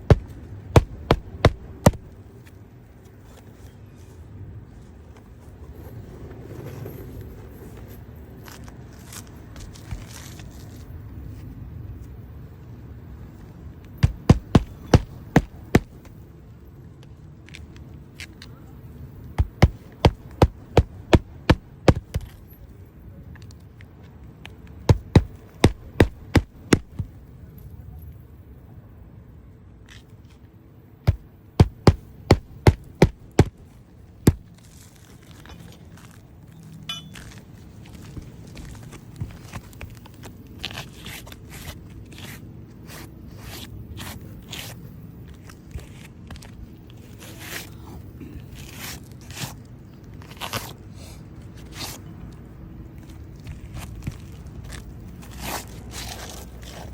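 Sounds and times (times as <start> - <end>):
sharp knocks: 0.0 - 2.1, 14.0 - 16.0, 19.4 - 22.3, 24.9 - 27.1, 31.1 - 33.6, 34.3 - 34.5
low steady rumble: 0.0 - 3.0, 30.8 - 39.0.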